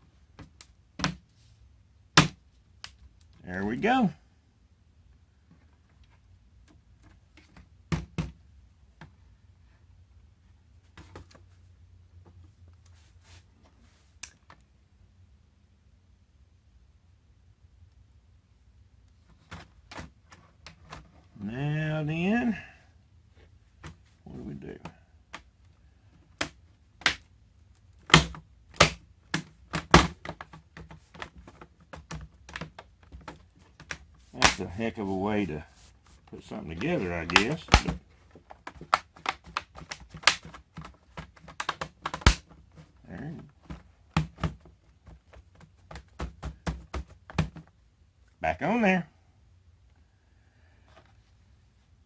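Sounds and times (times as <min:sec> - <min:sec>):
plastic laptop parts clicking: 0:36.8 - 0:42.6.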